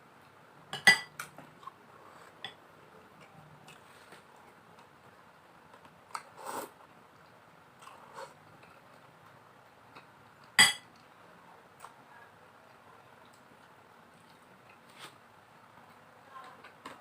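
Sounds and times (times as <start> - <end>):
spoon clinking against a plate: 0.8 - 1.2, 10.6 - 10.9.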